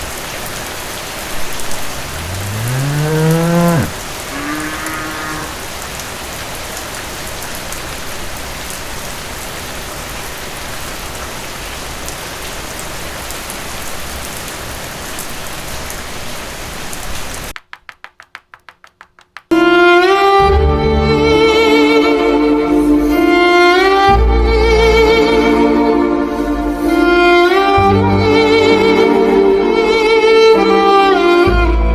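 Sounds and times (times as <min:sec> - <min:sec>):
steady rain falling: 0:00.0 - 0:19.1
bowed string music: 0:19.5 - 0:31.9.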